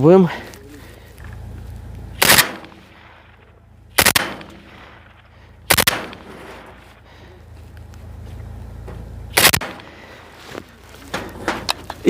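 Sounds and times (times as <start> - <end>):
machine gun bursts: 2.2 - 2.9, 4.0 - 4.8, 5.7 - 6.8, 9.4 - 9.9
gunshot echo: 2.2 - 6.9, 9.3 - 10.0.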